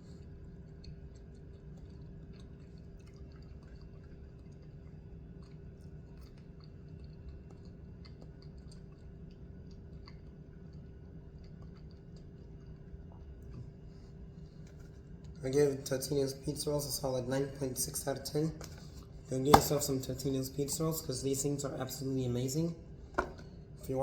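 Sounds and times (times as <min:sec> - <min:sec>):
person chewing food: 0:00.0 - 0:15.4
steady low hum: 0:00.0 - 0:24.0.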